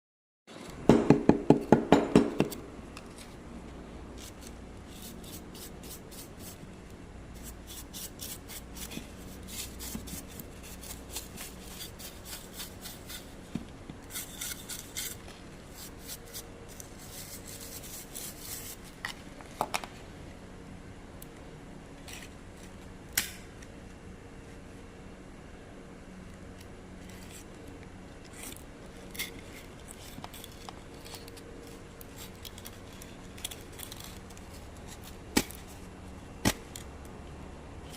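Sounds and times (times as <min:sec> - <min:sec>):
knocks on wood: 0:00.9 - 0:02.5
light scraping and rubbing: 0:07.4 - 0:19.2, 0:27.0 - 0:27.6, 0:28.2 - 0:35.9.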